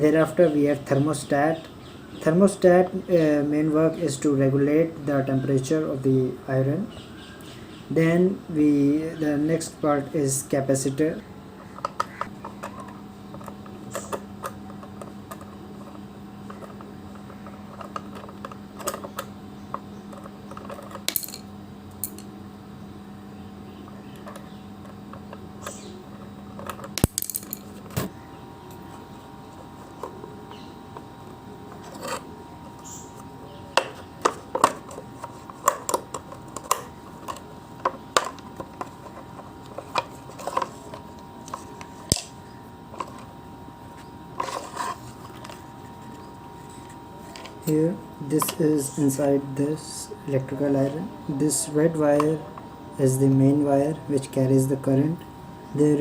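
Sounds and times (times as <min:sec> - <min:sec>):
faint steady hum: 0:00.0 - 0:56.0
metal parts clicking: 0:20.1 - 0:22.3, 0:26.6 - 0:27.7.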